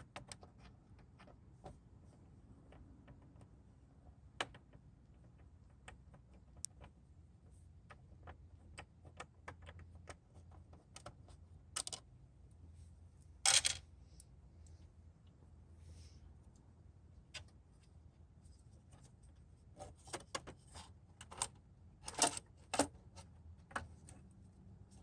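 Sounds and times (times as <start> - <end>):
plastic parts and tools clicking: 7.8 - 12.2, 18.8 - 24.3.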